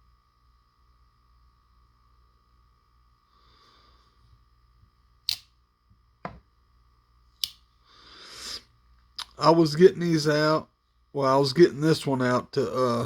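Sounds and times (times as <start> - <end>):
pocket knife clicks: 7.4 - 7.6.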